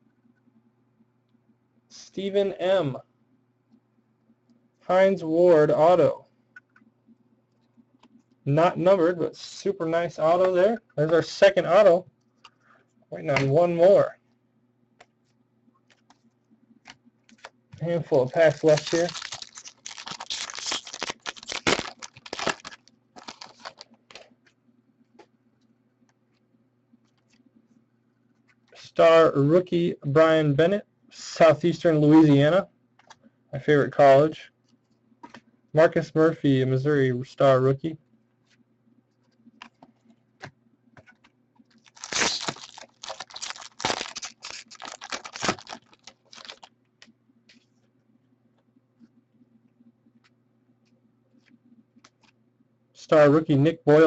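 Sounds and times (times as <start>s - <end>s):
foil pack tearing and crinkling: 18.1s - 23.9s, 41.8s - 46.7s.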